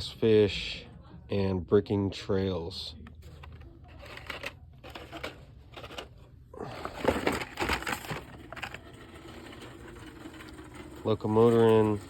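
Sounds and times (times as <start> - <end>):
plastic blister packs crinkling: 3.2 - 10.8.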